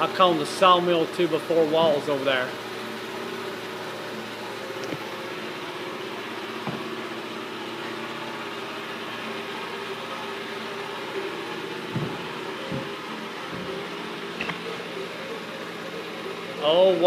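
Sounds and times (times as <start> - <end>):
mechanical hum with tones: 0.0 - 17.0
soft knocks: 6.6 - 6.9, 11.9 - 13.8.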